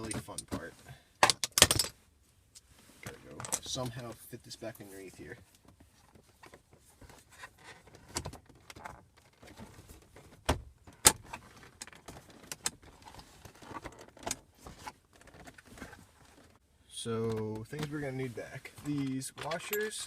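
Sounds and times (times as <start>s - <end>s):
clicks and knocks of parts: 1.2s - 2.0s, 18.9s - 20.0s.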